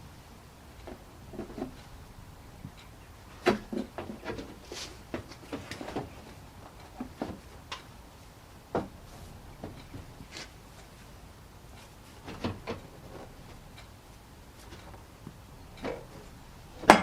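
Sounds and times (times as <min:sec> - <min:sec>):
hard plastic clicks and knocks: 0:08.7 - 0:09.0.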